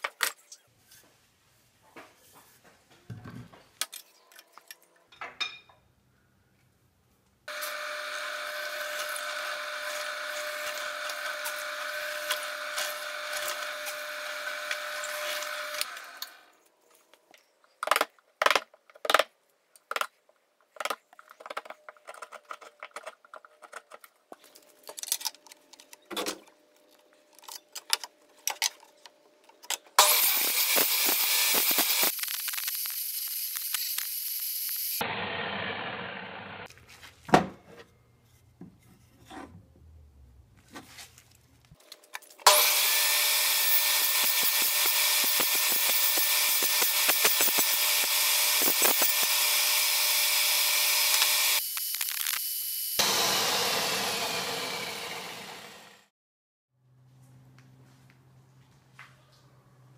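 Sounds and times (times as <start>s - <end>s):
power tool running: 7.5s - 16.5s, 30.0s - 36.7s, 42.4s - 56.1s.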